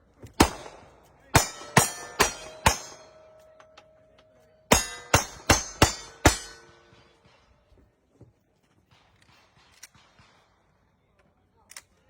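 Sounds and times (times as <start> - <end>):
gunshots: 0.4 - 3.3, 4.7 - 7.5
steel target ringing: 1.3 - 7.2.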